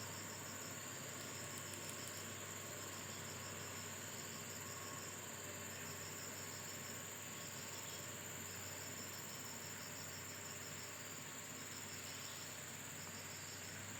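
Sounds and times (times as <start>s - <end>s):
insects chirping: 0.0s - 13.9s
high-pitched insect drone: 2.9s - 13.8s.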